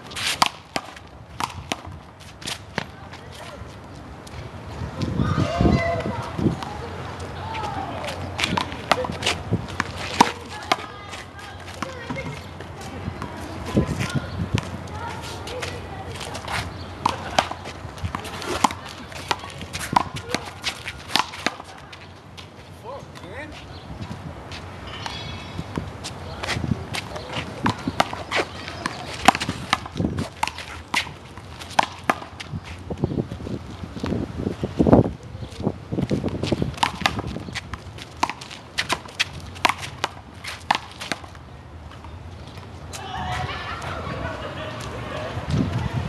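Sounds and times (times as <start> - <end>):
sneakers squeaking on court: 0.0 - 43.5
wind on microphone: 4.4 - 10.6, 12.1 - 16.8, 23.8 - 31.2, 32.4 - 38.0, 43.2 - 46.0.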